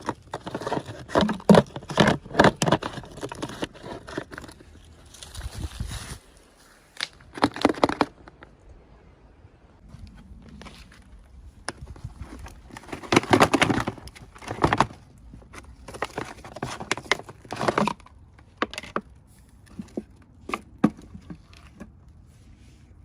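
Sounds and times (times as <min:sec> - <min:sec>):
packaging crackling and crinkling: 0:00.0 - 0:08.5, 0:10.6 - 0:19.0.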